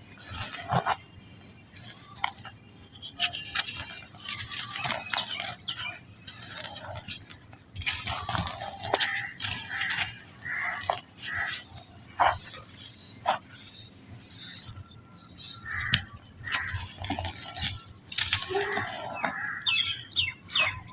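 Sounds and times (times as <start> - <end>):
sand crumbling with crunches: 0.0 - 13.7, 14.3 - 20.9
sand squeaks: 0.0 - 20.9.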